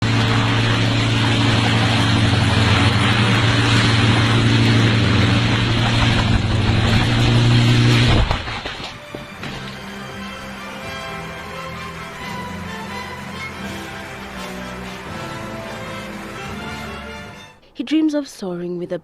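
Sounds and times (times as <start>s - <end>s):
rushing wind-like noise: 0.0s - 8.6s
small engine running at high speed: 0.0s - 8.7s, 9.4s - 17.4s.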